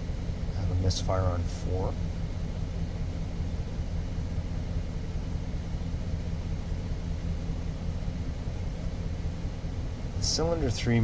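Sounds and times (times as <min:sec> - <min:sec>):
truck engine idling unevenly: 0:00.0 - 0:11.0.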